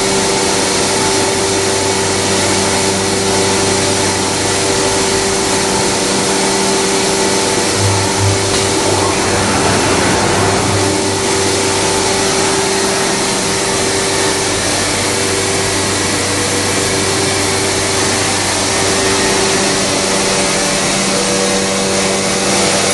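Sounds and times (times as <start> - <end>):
machining centre whirring: 7.4 - 13.0.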